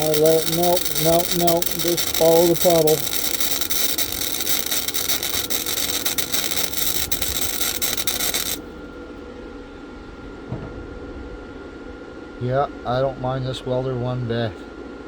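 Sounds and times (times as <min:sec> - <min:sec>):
welding arc crackling: 0:00.0 - 0:08.6.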